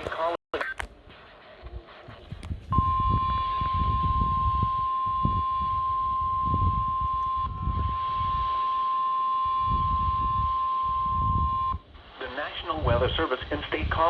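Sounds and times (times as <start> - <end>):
steady high warning alarm tone: 2.7 - 11.8.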